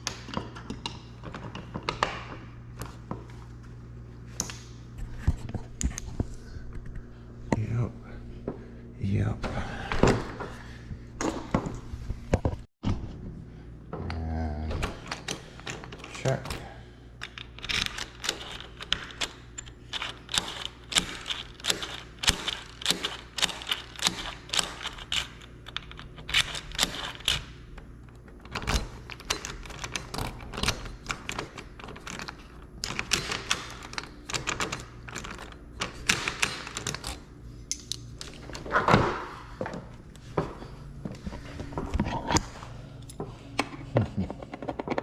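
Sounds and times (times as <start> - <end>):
lock parts and tools clicking: 14.8 - 39.2.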